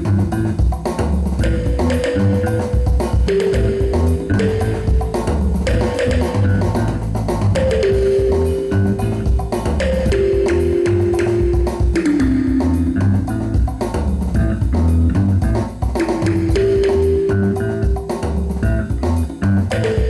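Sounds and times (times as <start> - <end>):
instrumental band music: 0.0 - 20.0
guitar melody: 1.4 - 13.9.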